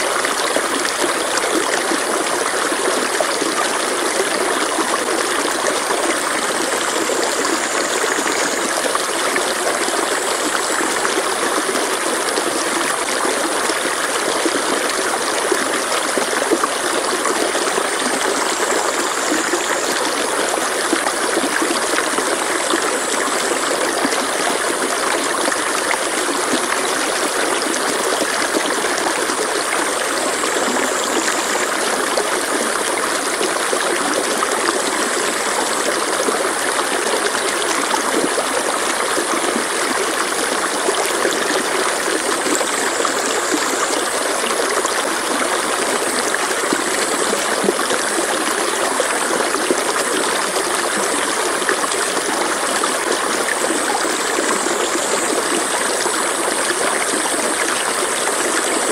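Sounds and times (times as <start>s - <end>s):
stream water flowing: 0.0s - 58.9s.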